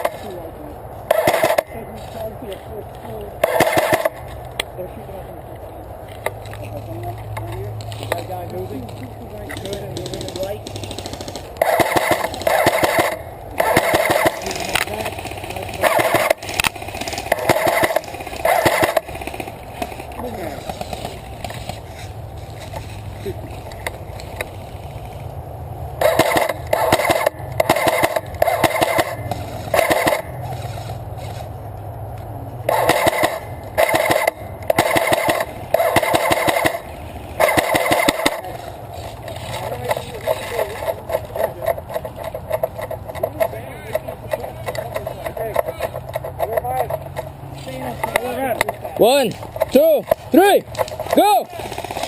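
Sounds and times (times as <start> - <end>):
airsoft rifle firing bursts: 1.1 - 1.7, 3.4 - 4.2, 9.6 - 21.8, 26.0 - 31.3, 32.7 - 38.7.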